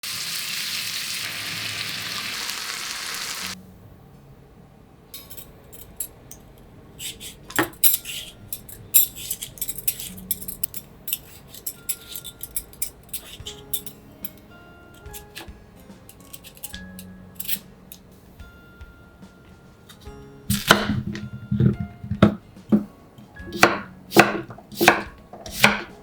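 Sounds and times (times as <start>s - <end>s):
food sizzling in a frying pan: 0.0s - 3.6s
utensils and dishes clinking: 5.2s - 18.1s, 19.4s - 26.0s.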